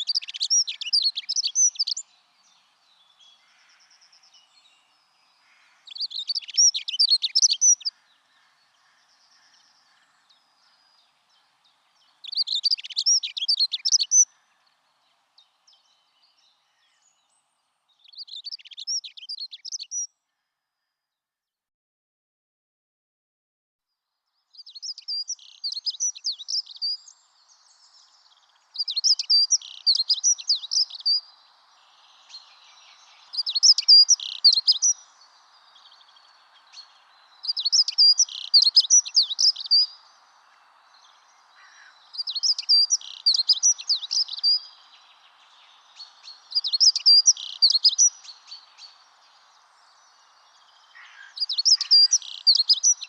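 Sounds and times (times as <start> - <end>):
songbird twittering song: 0.0 - 20.2, 24.2 - 53.0
faint background hiss: 0.0 - 20.3, 23.9 - 53.0.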